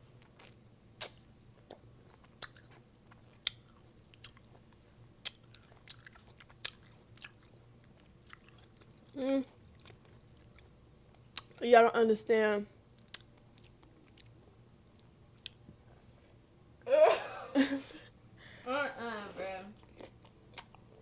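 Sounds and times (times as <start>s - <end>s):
person chewing crunchy food: 0.2s - 11.6s, 13.0s - 15.6s, 19.8s - 20.9s
mouth smacks: 0.4s - 1.8s.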